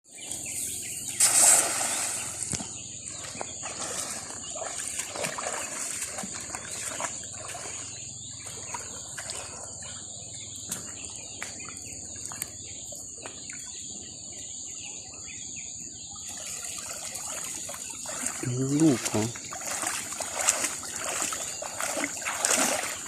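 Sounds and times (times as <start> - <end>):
loud splash: 1.2 - 2.6, 18.0 - 23.0
small splashes: 1.2 - 12.6, 16.2 - 23.0
high insect drone: 16.4 - 23.0.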